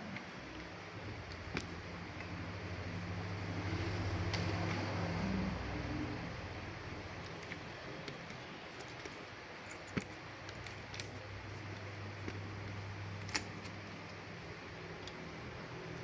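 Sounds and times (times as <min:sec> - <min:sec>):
low room hum: 0:00.0 - 0:16.0
keyboard and mouse clicks: 0:13.2 - 0:14.2.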